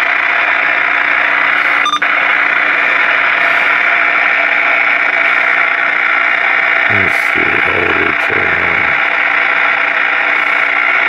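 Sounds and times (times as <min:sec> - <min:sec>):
radio static hiss: 0:06.9 - 0:09.1.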